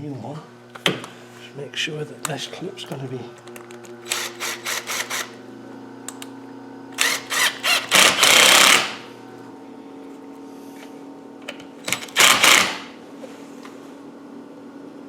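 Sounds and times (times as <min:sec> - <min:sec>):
cordless driver whirring: 0:02.2 - 0:05.4, 0:06.9 - 0:09.1, 0:11.8 - 0:13.0.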